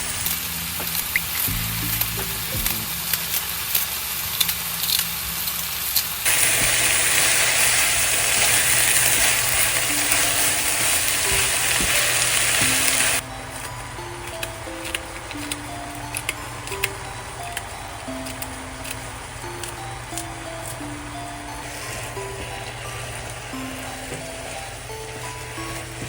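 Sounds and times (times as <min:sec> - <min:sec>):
meat sizzling in a pan: 0:01.0 - 0:13.2.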